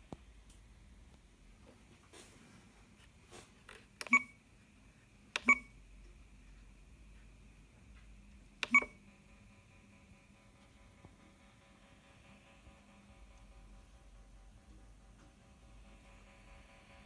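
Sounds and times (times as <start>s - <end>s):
button clicks: 4.0s - 4.3s, 5.4s - 5.7s, 8.6s - 8.9s
short beeps: 4.0s - 4.4s, 5.4s - 5.8s, 8.6s - 9.0s.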